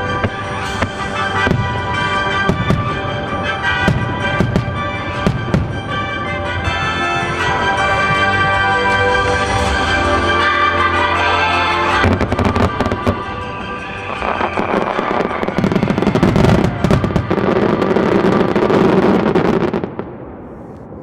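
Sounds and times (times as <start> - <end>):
fireworks crackling and popping: 0.0 - 6.1, 12.0 - 21.0
music: 0.0 - 19.8.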